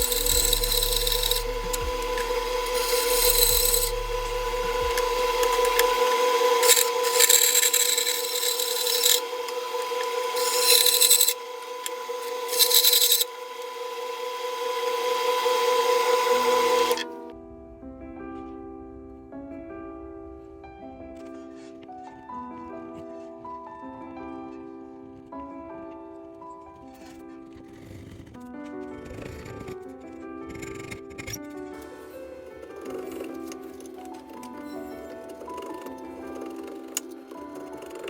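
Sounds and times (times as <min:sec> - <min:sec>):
cut-off saw cutting metal: 0:00.0 - 0:17.3.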